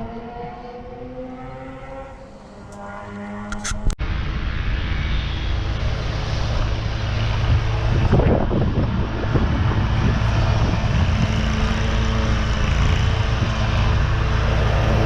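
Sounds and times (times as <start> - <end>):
engine humming: 0.0 - 15.0
mower engine under load: 5.8 - 15.0.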